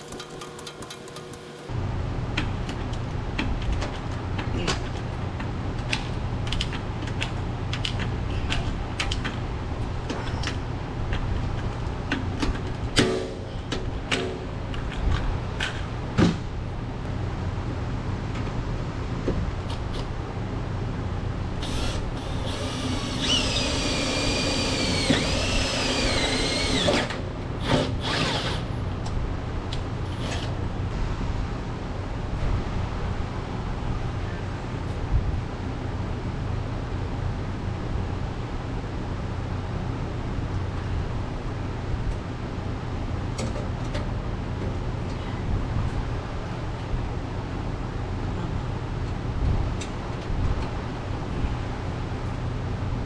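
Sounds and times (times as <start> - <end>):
power drill whining: 0.0 - 1.7, 21.6 - 28.7.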